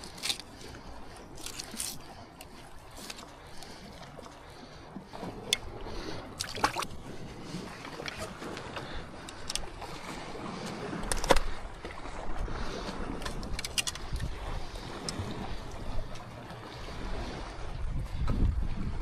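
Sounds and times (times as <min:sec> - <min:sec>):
water lapping at a boat: 0:00.0 - 0:19.0
wind buffeting microphone: 0:05.1 - 0:19.0.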